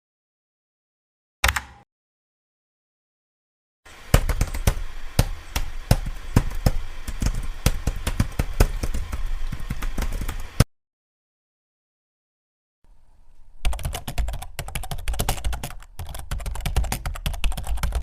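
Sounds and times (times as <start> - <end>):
computer keyboard typing: 4.1 - 10.6, 13.6 - 18.0.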